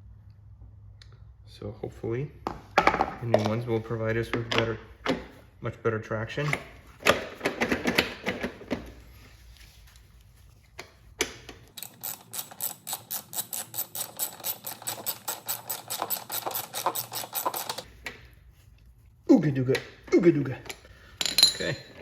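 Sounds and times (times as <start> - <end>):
ratchet wrench clicking: 11.8 - 17.9.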